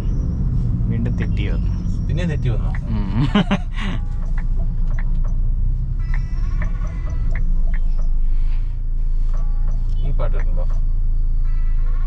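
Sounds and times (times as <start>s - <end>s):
engine and road drone: 0.0s - 12.0s
music on car sound system: 2.7s - 12.0s.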